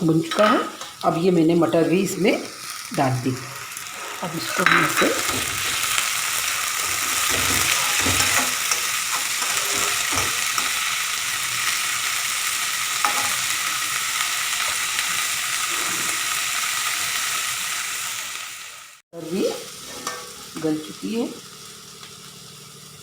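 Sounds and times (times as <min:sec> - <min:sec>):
vegetables sizzling in oil: 0:00.0 - 0:23.0
spoon scraping a pan: 0:00.2 - 0:01.8, 0:03.4 - 0:10.9, 0:13.0 - 0:13.8, 0:19.8 - 0:20.6.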